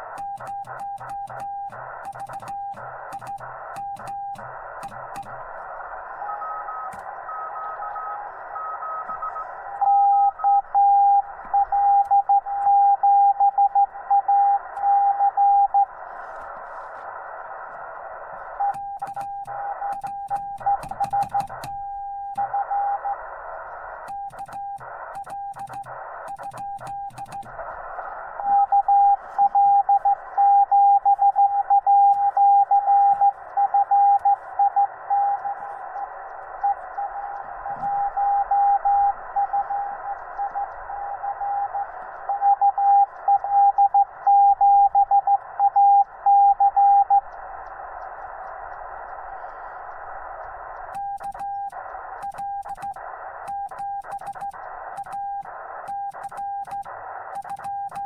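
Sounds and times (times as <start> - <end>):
receiver hiss: 0.0 - 58.0
morse code beep tone: 0.2 - 4.5, 6.2 - 15.9, 18.6 - 23.1, 28.4 - 35.6, 37.9 - 47.2, 51.0 - 58.0.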